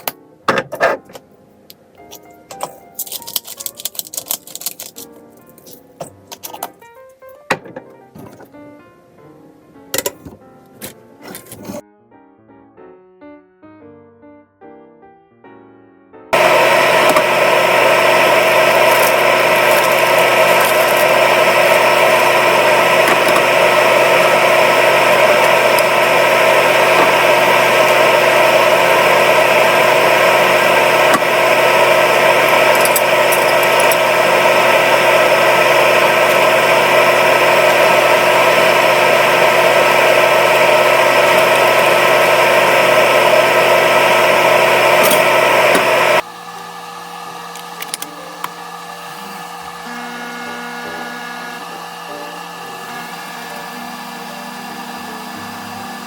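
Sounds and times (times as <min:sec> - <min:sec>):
appliance motor whining: 0:16.4 - 0:56.0.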